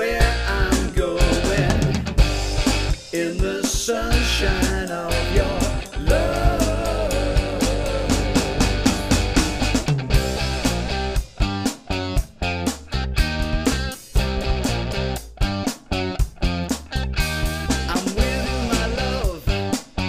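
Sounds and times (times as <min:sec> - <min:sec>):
person singing: 0:00.0 - 0:02.1, 0:03.1 - 0:09.4, 0:17.9 - 0:19.7
rock song with guitar and drums: 0:00.0 - 0:20.0.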